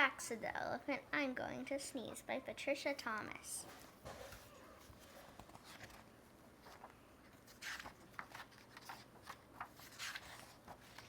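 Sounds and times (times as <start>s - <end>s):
paper rustling: 3.6s - 11.0s.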